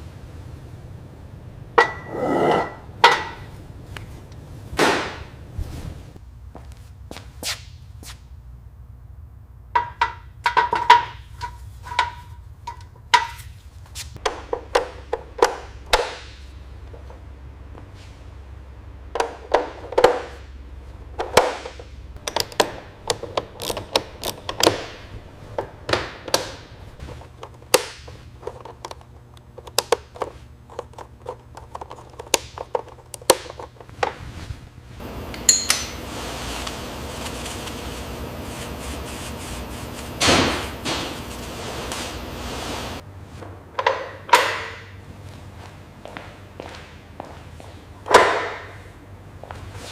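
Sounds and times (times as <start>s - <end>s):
steady hiss: 34.4s - 43.0s.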